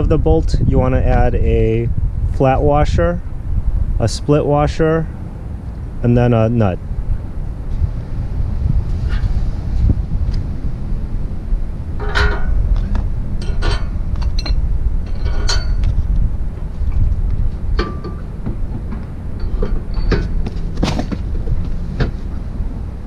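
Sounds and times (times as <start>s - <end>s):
low wind rumble on microphone: 0.0s - 23.0s
metal clanks and clinks: 12.0s - 16.0s, 17.8s - 21.3s.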